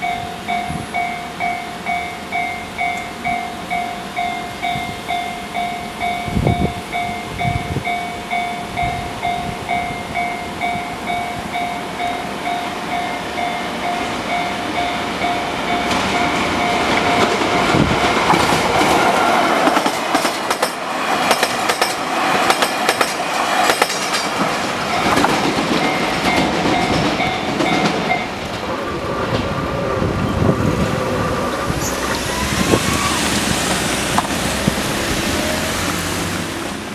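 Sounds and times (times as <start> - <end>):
level crossing warning bell: 0.0 - 18.3, 24.2 - 28.4
train wheels clattering on rails: 0.0 - 36.9.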